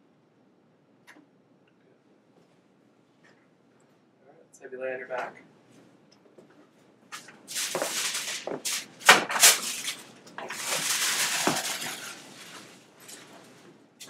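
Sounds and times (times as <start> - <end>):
rustling on treatment table: 5.7 - 13.8.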